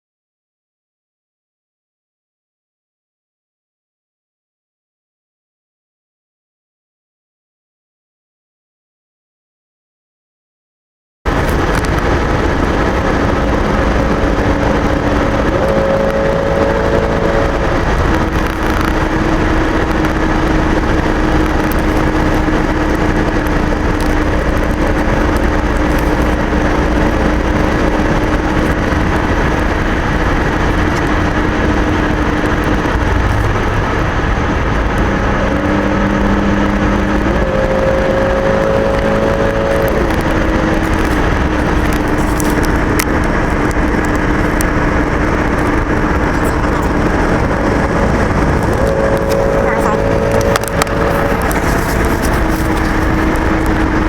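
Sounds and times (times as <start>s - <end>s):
car road noise: 11.3s - 54.0s
engine hum rising in pitch: 11.3s - 54.0s.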